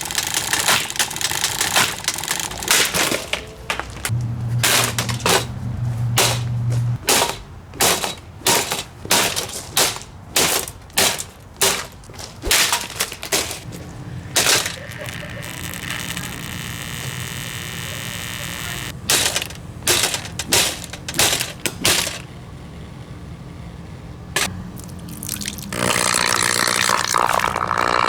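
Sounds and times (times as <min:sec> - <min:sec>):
hard blows smashing a fan: 0:00.0 - 0:17.4, 0:18.9 - 0:22.4
steady low hum: 0:00.4 - 0:24.8.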